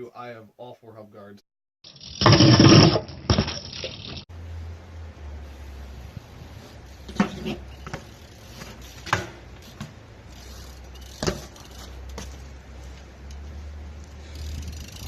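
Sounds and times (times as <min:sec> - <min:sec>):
sharp knocks on bike: 0:07.1 - 0:10.0, 0:11.1 - 0:12.4.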